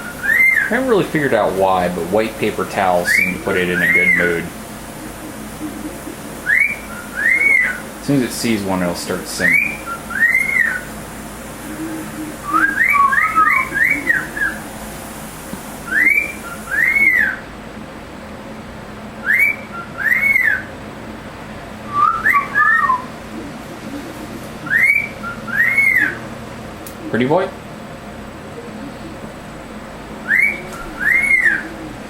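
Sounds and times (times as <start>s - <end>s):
cockatiel whistling: 0.0s - 1.5s, 2.7s - 7.9s, 9.3s - 10.9s, 11.6s - 14.7s, 15.8s - 17.4s, 19.2s - 20.7s, 21.9s - 26.3s, 30.2s - 31.9s.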